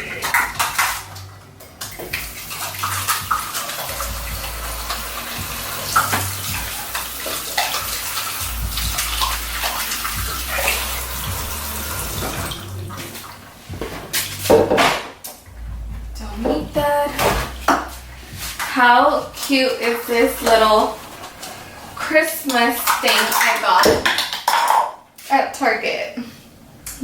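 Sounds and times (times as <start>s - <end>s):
tap water splashing into sink: 0.2s - 13.3s, 22.5s - 24.9s.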